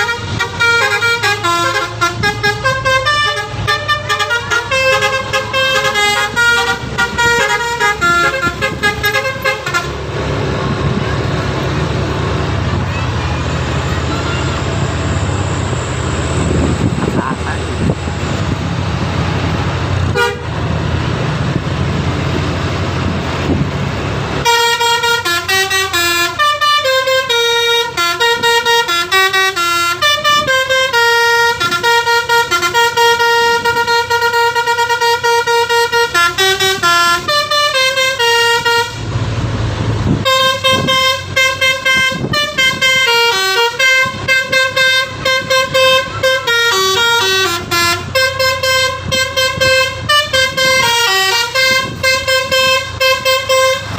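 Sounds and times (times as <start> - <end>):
musical bus horn tune: 0.0 - 10.3, 20.0 - 20.7, 24.4 - 39.1, 40.1 - 53.9
engine and road rumble: 0.0 - 53.9.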